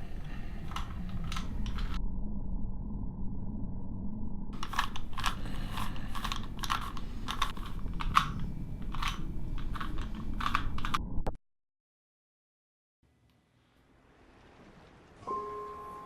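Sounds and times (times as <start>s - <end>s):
steady low hum: 0.0s - 11.3s
plastic cube twisting clicks: 4.6s - 11.0s.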